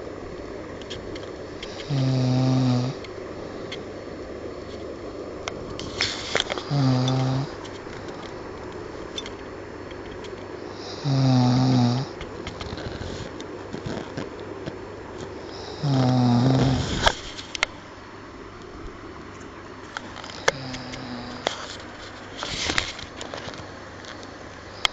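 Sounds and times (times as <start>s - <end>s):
person snoring loudly: 1.7s - 3.0s, 6.6s - 7.6s, 10.7s - 13.3s, 15.4s - 17.1s, 20.5s - 21.4s.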